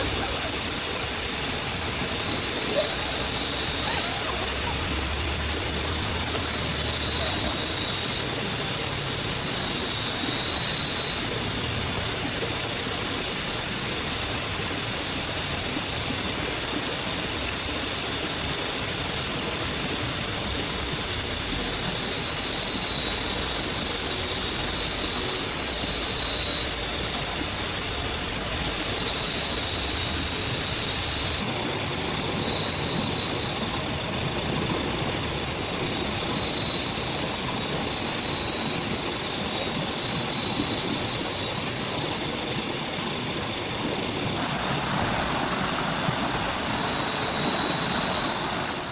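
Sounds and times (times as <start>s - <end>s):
heavy rain: 44.3s - 48.9s.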